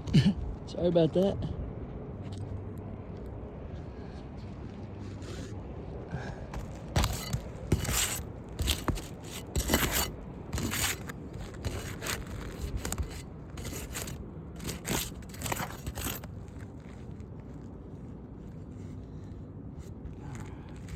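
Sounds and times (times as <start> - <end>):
roof shingle scraping and crunching: 6.6 - 17.8, 18.5 - 20.9.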